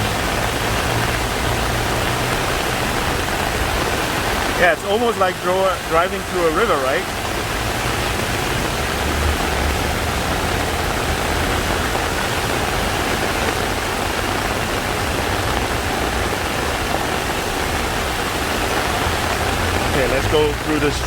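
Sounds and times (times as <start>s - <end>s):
heavy rain pouring: 0.0s - 21.0s
traffic rumbling through water: 0.0s - 21.0s.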